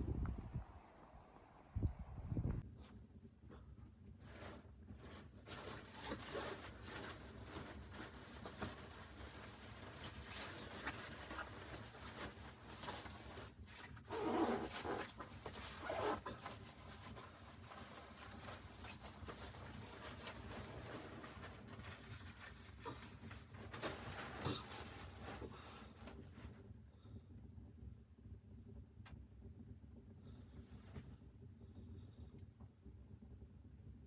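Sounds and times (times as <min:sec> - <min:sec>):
rustling and scraping handling: 0:02.8 - 0:26.7.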